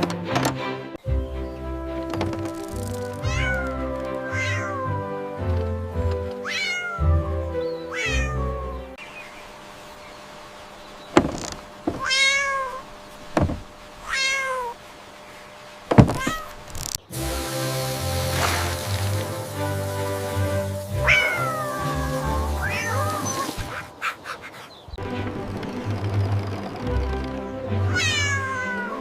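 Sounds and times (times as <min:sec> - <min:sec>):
cat meowing: 0:03.2 - 0:05.0, 0:06.4 - 0:08.8, 0:12.0 - 0:12.8, 0:14.0 - 0:14.8, 0:16.2 - 0:16.6, 0:21.0 - 0:23.6, 0:27.9 - 0:29.0
sharp knocks: 0:11.2 - 0:12.1, 0:13.3 - 0:13.7, 0:15.9 - 0:16.4.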